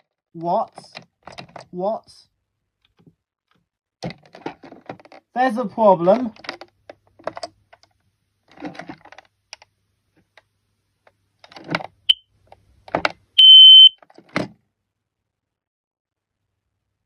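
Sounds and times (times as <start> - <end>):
plastic clicks and knocks: 0.8 - 1.7, 4.0 - 5.3, 6.1 - 13.3
high-pitched alarm beep: 13.4 - 14.0
short alarm chirp: 13.4 - 14.0.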